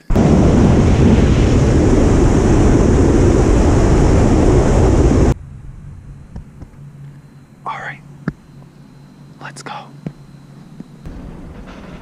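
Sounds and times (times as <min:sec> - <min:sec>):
wind rushing on microphone: 0:00.0 - 0:07.3
deep vehicle rumble: 0:00.0 - 0:09.5.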